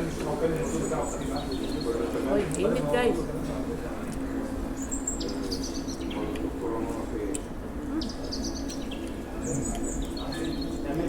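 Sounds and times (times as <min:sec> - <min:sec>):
murmur of voices: 0:00.0 - 0:11.0
small birds chirping: 0:00.6 - 0:02.0, 0:04.8 - 0:06.4, 0:07.9 - 0:11.0.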